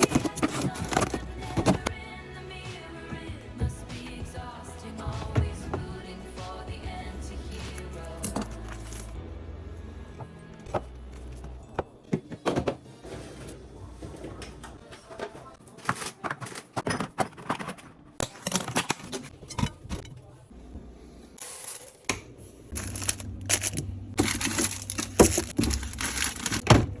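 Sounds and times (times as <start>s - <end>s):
items set down clicks and knocks: 0.0s - 2.0s, 10.6s - 20.1s, 21.4s - 27.0s
plastic packaging crinkling: 22.7s - 26.6s.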